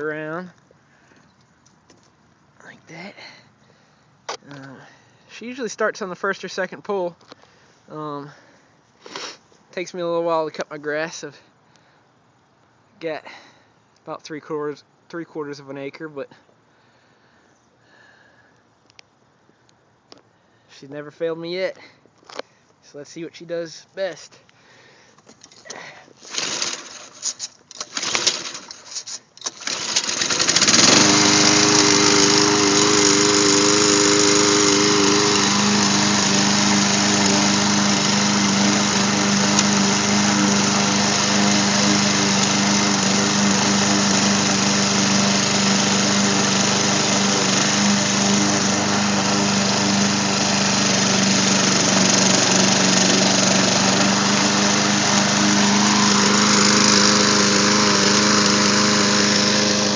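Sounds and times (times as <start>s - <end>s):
lawn mower engine starting and running: 0.0s - 11.5s, 24.7s - 59.9s.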